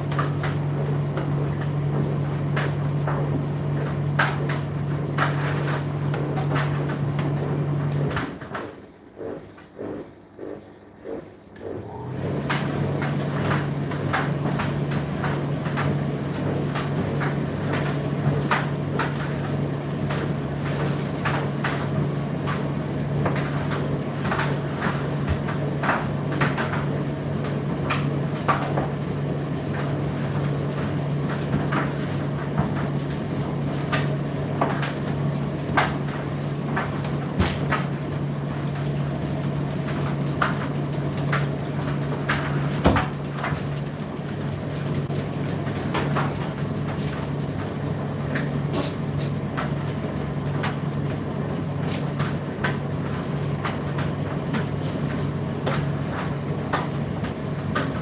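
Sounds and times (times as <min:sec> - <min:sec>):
load tumbling in dryer drum: 0:00.0 - 0:08.9, 0:11.9 - 0:58.0
tumble dryer motor hum: 0:00.0 - 0:58.0.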